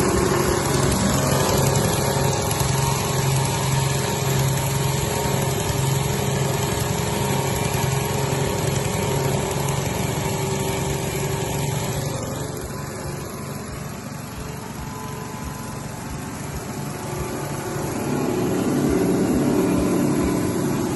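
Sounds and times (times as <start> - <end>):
machine motor humming: 0.0 - 20.9.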